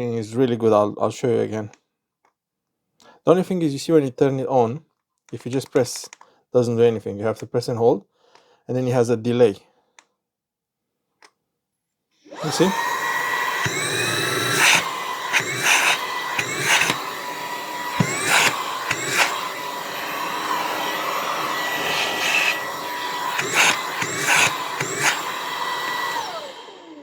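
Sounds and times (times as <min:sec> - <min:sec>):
handheld vacuum motor whining: 0:12.3 - 0:27.0.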